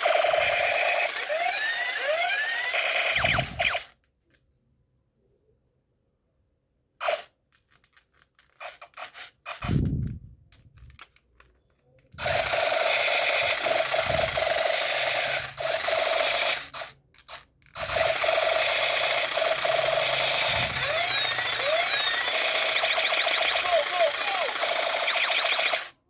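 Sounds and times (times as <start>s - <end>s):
toy gun electric buzz: 0.0s - 4.0s, 7.0s - 7.3s, 8.6s - 9.9s, 12.2s - 26.0s
toy gun clicks: 0.0s - 4.4s, 7.0s - 9.9s, 12.2s - 26.0s.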